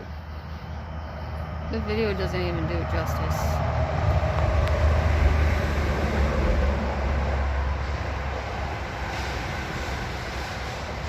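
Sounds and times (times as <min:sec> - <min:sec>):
low rumble of road traffic: 0:00.0 - 0:11.0.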